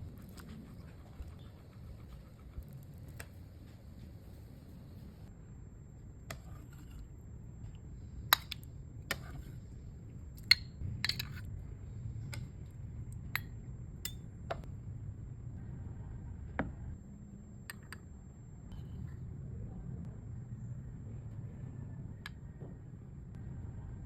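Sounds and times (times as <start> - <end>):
low steady hum: 0.0 - 24.0
kitchenware clinking: 10.5 - 11.4.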